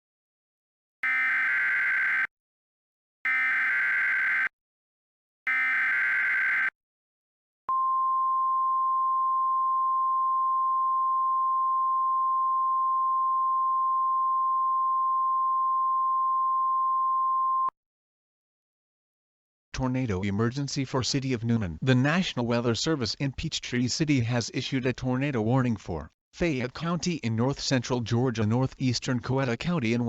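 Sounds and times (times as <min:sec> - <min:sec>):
digital data bursts: 0:01.0 - 0:02.3, 0:03.3 - 0:04.5, 0:05.5 - 0:06.7
steady attention tone: 0:01.0 - 0:02.3, 0:03.3 - 0:04.5, 0:05.5 - 0:06.7.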